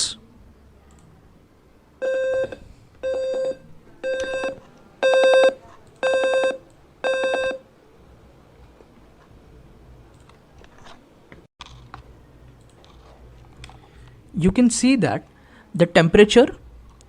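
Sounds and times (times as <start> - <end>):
piezo speaker beeping: 2.0 - 7.6.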